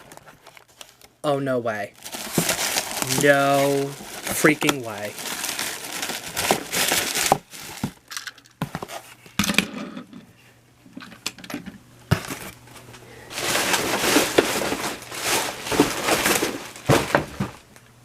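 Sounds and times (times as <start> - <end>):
packaging crinkling and rustling: 0.0 - 1.2, 1.9 - 9.1, 13.3 - 17.7.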